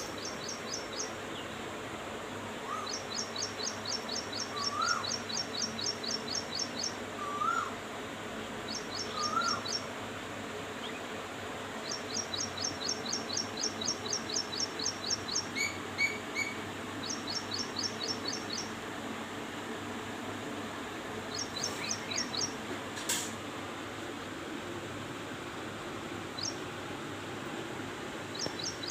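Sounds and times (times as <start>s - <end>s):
sharp click: 23.0s - 23.4s
small bird chirping: 26.4s - 26.6s, 28.3s - 28.9s.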